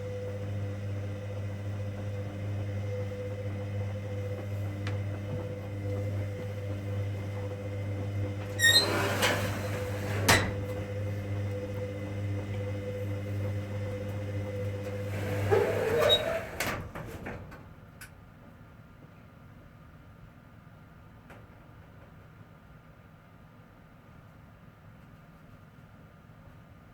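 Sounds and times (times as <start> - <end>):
washing machine motor humming: 0.0 - 17.9.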